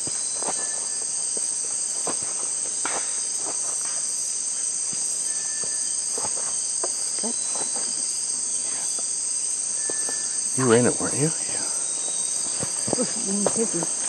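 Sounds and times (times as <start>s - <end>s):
insects shrilling: 0.0s - 14.0s
pulsing insect trill: 0.0s - 14.0s.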